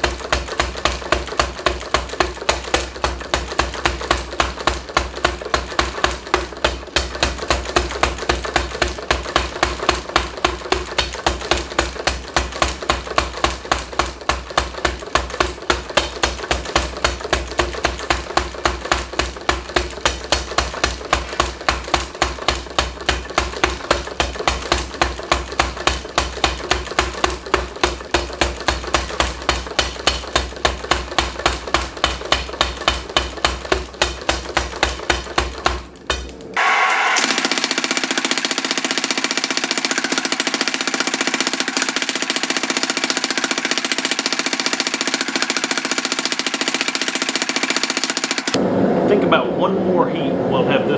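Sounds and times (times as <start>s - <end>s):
power hammer striking steel: 0.0s - 48.6s.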